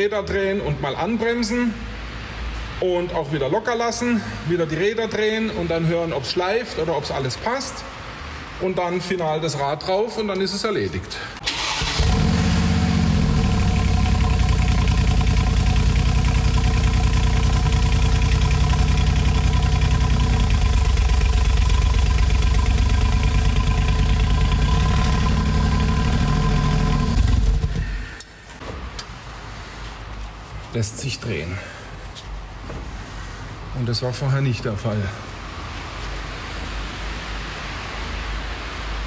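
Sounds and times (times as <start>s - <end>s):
car engine idling: 11.5s - 28.3s.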